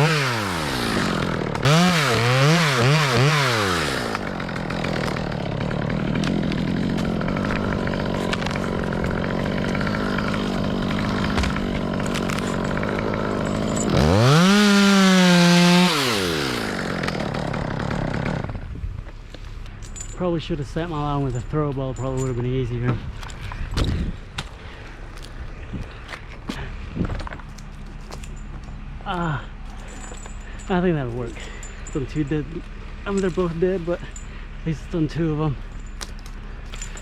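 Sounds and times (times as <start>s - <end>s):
chainsaw revving and cutting: 0.0s - 18.7s.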